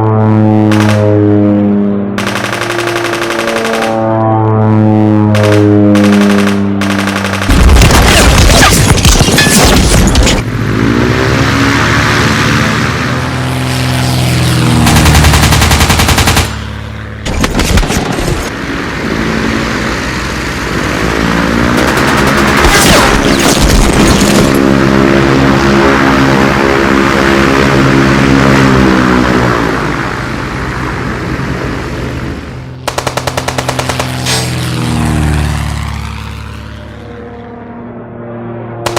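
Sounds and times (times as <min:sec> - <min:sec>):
machine-gun fire: 0:00.7 - 0:01.0, 0:02.2 - 0:04.0, 0:05.4 - 0:10.4, 0:14.8 - 0:16.6, 0:17.2 - 0:18.5, 0:21.7 - 0:24.6, 0:32.9 - 0:34.6
model plane engine passing: 0:10.4 - 0:17.2, 0:18.5 - 0:22.6, 0:24.6 - 0:32.8, 0:33.6 - 0:38.9.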